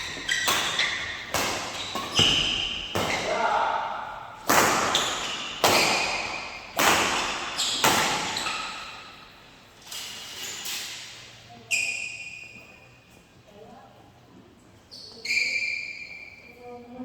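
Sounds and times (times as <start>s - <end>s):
racket hitting shuttlecock: 0.0s - 9.3s.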